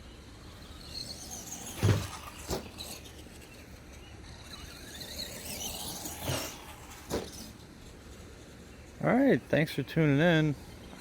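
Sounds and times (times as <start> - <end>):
toy truck electric motor whining: 0.0 - 11.0
sharp thumps: 0.8 - 3.3, 4.5 - 7.6.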